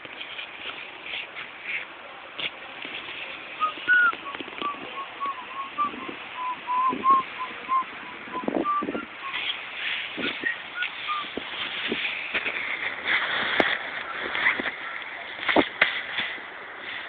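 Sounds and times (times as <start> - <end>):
person whistling a tune: 3.6 - 9.5, 10.2 - 11.3.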